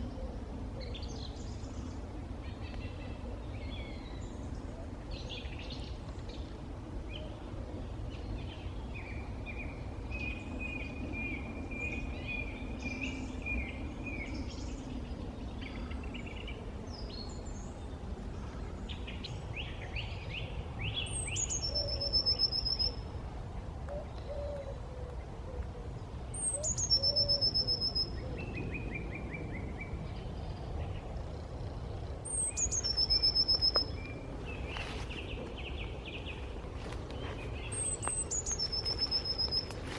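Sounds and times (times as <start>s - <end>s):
bird song with rapid trill: 18.8s - 23.0s, 26.3s - 31.0s, 32.2s - 39.9s
small birds chirping: 26.3s - 39.9s
steady low rumble: 27.4s - 39.9s.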